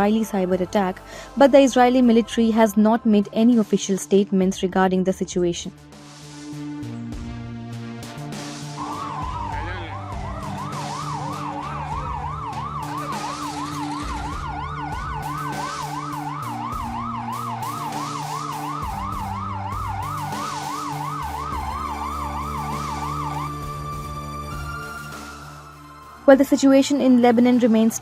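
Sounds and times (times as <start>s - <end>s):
siren yelping: 8.7s - 26.4s
second siren tone gliding upward: 8.8s - 26.3s.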